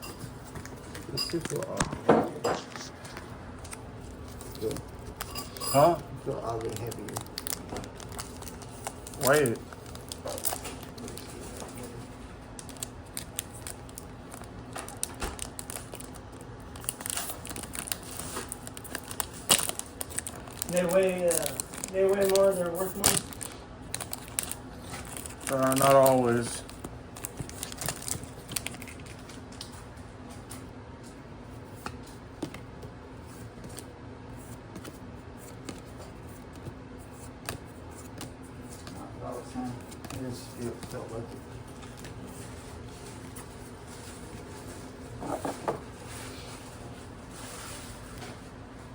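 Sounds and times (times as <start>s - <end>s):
low room hum: 0.0s - 48.9s
wrapper rustles: 2.5s - 29.7s
foil pack crinkling: 2.6s - 29.7s, 34.5s - 48.4s.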